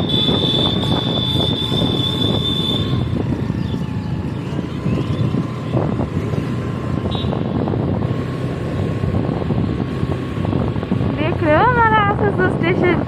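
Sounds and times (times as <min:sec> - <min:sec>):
vehicle running noise: 0:00.0 - 0:13.0
wind buffeting microphone: 0:00.0 - 0:13.0.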